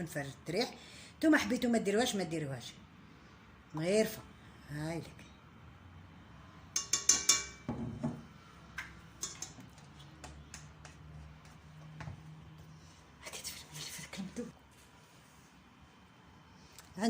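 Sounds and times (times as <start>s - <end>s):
spoon clinking against bowl: 6.8s - 7.7s, 9.2s - 9.6s.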